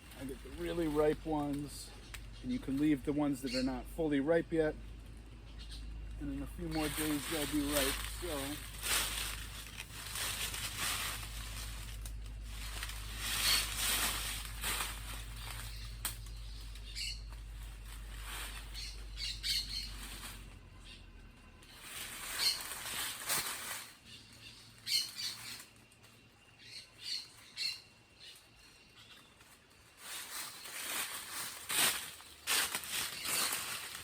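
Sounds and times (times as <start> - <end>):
leaves and branches rustling: 0.0 - 34.0
birds squawking: 0.5 - 11.8, 12.6 - 21.1, 21.7 - 23.2, 24.0 - 25.7.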